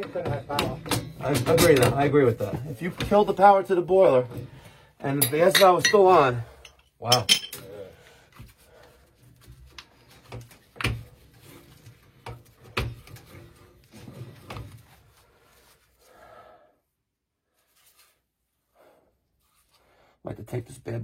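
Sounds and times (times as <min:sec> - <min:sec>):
hand tools knocking on metal: 0:00.0 - 0:02.1.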